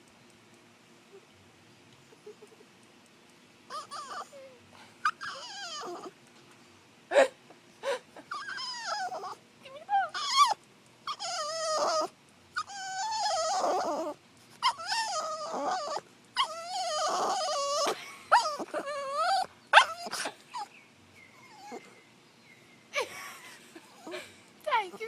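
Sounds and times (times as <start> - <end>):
dog whining and yelping: 3.7 - 6.2, 8.2 - 9.4, 10.0 - 22.0.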